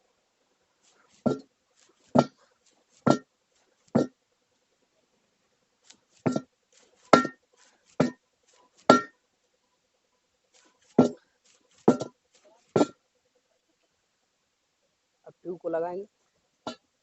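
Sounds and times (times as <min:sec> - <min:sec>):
hammer striking metal rim: 0:07.2 - 0:07.4, 0:08.9 - 0:09.1.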